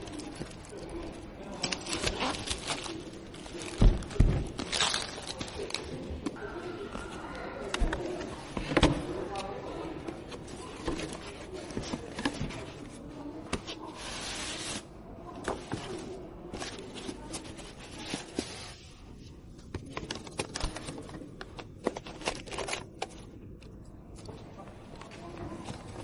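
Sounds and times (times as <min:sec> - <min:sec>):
packaging rustling: 0:00.0 - 0:06.0.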